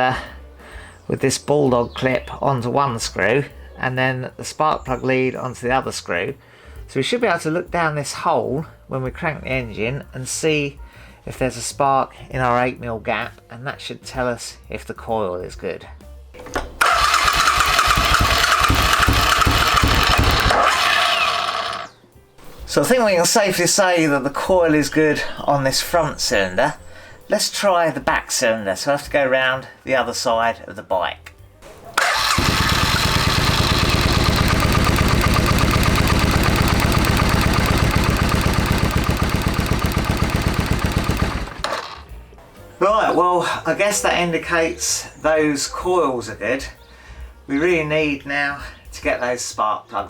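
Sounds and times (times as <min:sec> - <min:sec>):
motorcycle engine cranking: 0:16.4 - 0:27.2, 0:31.7 - 0:42.1.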